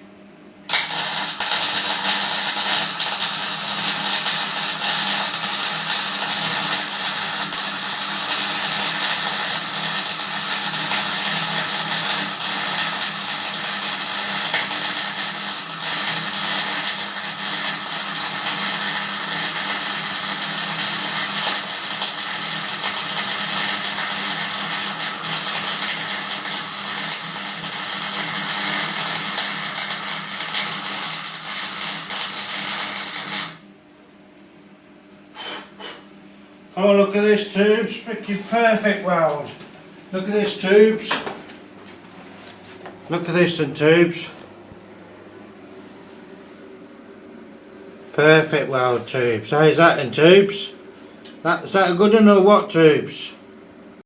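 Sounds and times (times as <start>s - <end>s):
welding arc crackling hiss: 0.7s - 33.7s.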